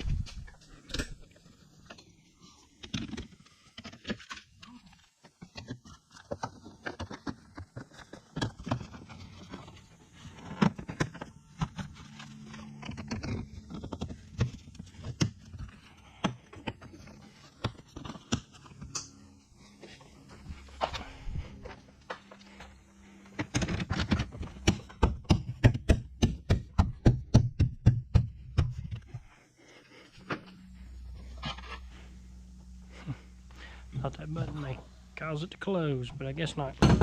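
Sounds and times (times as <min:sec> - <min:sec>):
parts scraping: 0:28.7 - 0:37.0.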